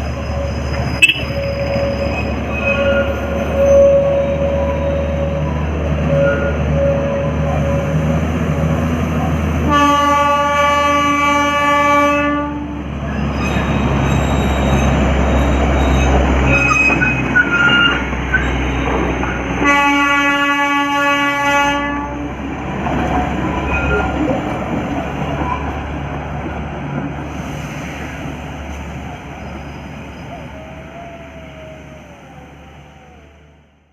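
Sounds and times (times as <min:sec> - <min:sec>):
train running: 0:00.0 - 0:33.9
train horn blasts: 0:01.0 - 0:01.8, 0:09.6 - 0:12.8, 0:19.6 - 0:22.3.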